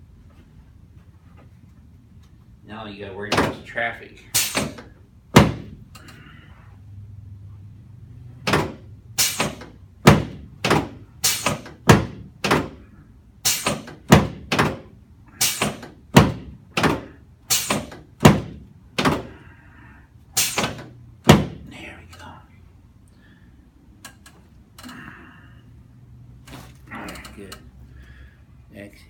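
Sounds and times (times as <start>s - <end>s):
sharp thunks of chiropractic adjusting: 3.3s - 6.5s, 8.4s - 19.6s, 20.4s - 22.3s.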